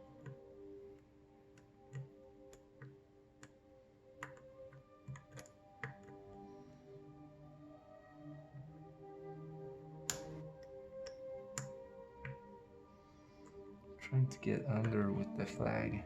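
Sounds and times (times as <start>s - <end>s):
faint background music: 0.0s - 16.0s
lock pick clicking: 4.2s - 6.2s, 10.0s - 12.4s.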